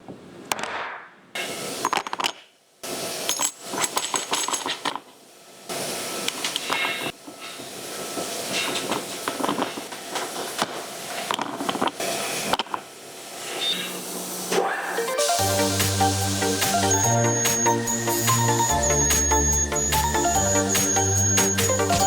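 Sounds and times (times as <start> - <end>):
clinks of metal chips: 3.2 - 5.0
milling machine cutting metal: 15.2 - 22.0.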